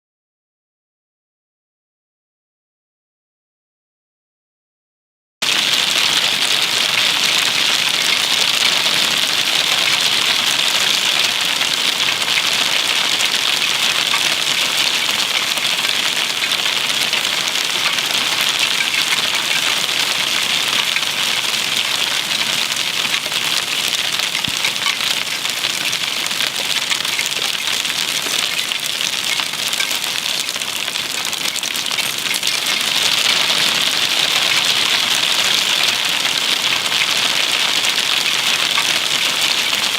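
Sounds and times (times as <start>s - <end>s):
hailstones and rain pelting down: 5.4s - 39.9s.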